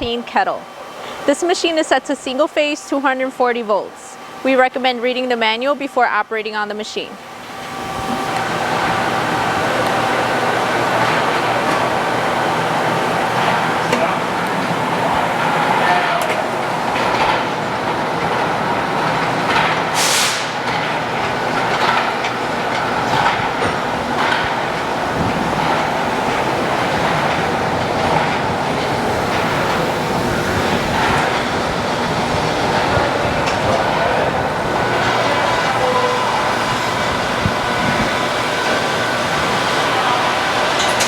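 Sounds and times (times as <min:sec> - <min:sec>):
agitator mechanical noise: 0:00.0 - 0:41.0
brief hiss: 0:20.0 - 0:20.6.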